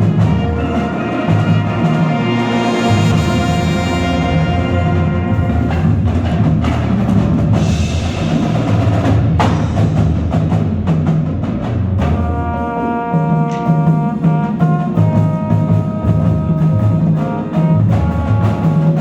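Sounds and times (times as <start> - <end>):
wind instruments holding a chord: 0.0 - 6.8
marching band drums and mallets: 0.0 - 19.0.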